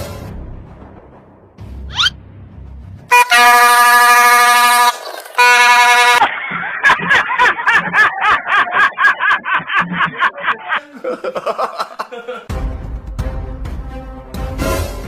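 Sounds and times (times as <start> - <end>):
warbling laugh-like sounds: 1.9 - 2.1, 6.0 - 12.5
vehicle horn blast: 3.1 - 6.2.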